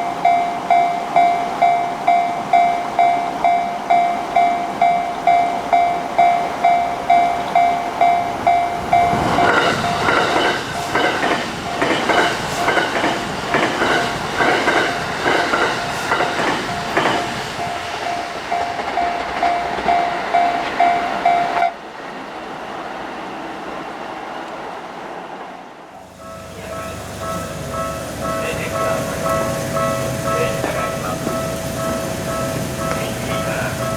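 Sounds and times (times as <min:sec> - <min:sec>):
level-crossing warning bell clanging: 0:00.0 - 0:21.9, 0:26.0 - 0:33.9
train wheels clacking over rail joints: 0:06.6 - 0:21.7, 0:26.2 - 0:33.9.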